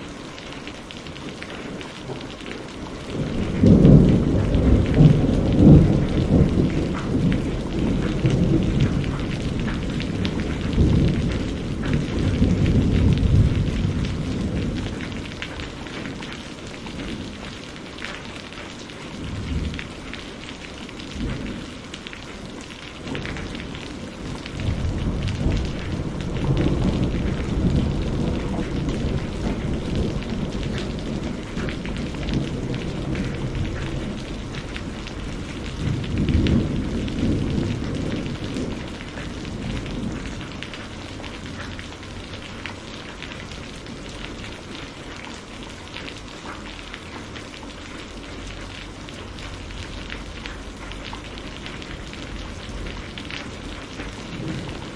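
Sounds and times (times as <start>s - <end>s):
steady rain: 0.0s - 54.9s
thunder rolling: 3.1s - 16.2s, 23.0s - 41.9s, 51.4s - 54.9s.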